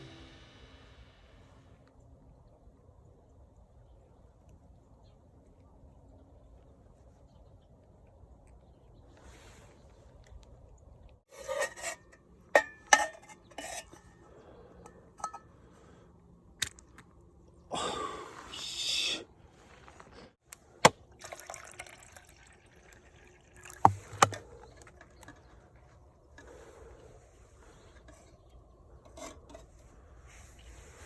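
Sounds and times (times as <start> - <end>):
pouring or rustling: 21.1 - 24.6.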